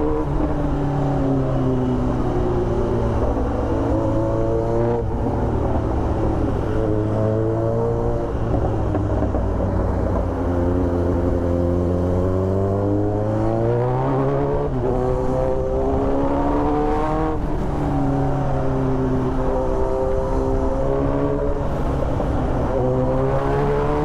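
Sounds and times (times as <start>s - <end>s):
wind and road noise: 0.0s - 24.0s.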